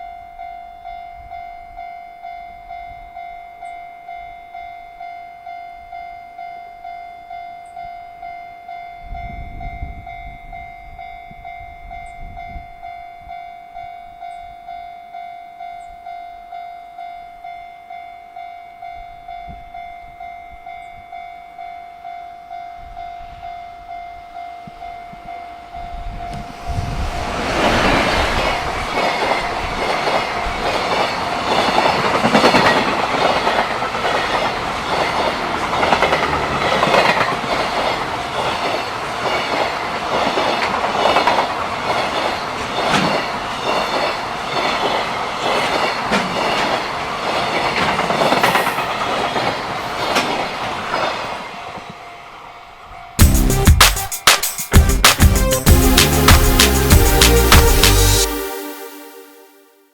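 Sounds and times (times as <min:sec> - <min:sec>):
freight train wheels clacking: 0:27.2 - 0:51.4.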